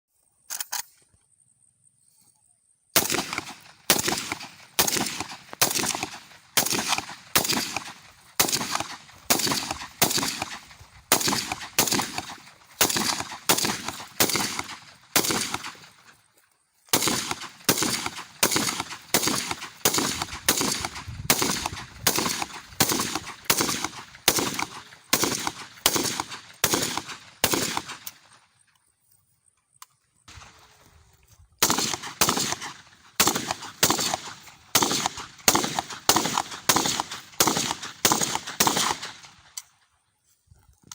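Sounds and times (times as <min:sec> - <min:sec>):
gunshots: 0:03.0 - 0:16.0, 0:16.9 - 0:28.3, 0:31.6 - 0:39.4.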